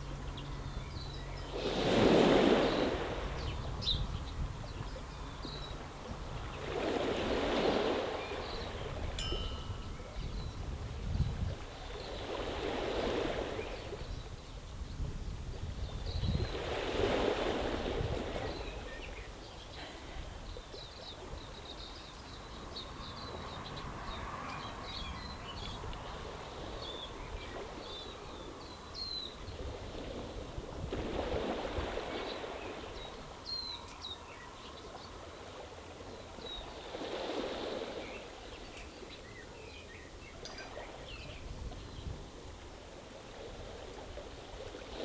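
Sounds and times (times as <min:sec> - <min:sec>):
birds chirping: 0:00.0 - 0:01.8, 0:02.4 - 0:06.7, 0:07.7 - 0:11.3
waves washing over stony beach: 0:01.6 - 0:03.4, 0:06.4 - 0:09.8, 0:11.6 - 0:14.0, 0:16.5 - 0:18.9.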